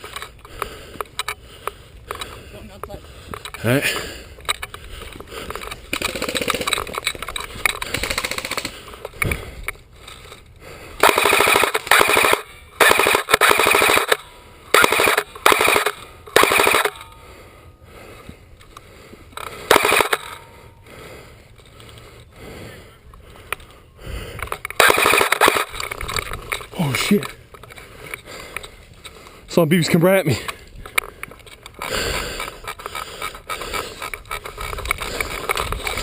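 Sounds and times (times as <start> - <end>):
airsoft rifle automatic bursts: 5.9 - 8.8, 11.0 - 17.0, 19.7 - 20.3, 24.8 - 26.2.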